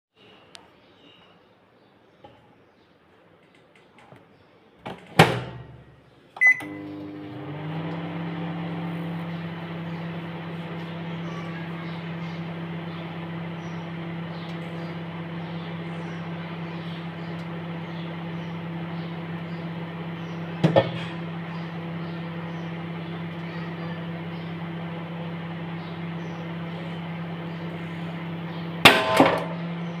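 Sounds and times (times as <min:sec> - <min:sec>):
microwave oven humming: 0:05.3 - 0:30.0
keypad beep: 0:06.4 - 0:06.8.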